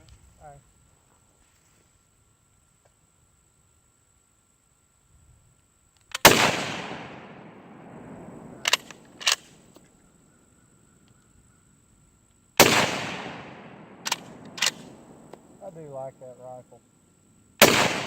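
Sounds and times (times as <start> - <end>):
rifle shots echoing: 6.2 - 9.6, 12.6 - 15.6, 17.6 - 18.0
rifle bolt metallic clicks: 8.6 - 9.5, 14.0 - 15.5.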